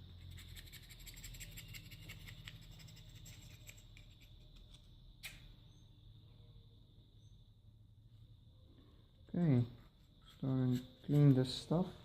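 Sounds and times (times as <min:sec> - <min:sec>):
small metal parts scratching: 0:00.2 - 0:04.7.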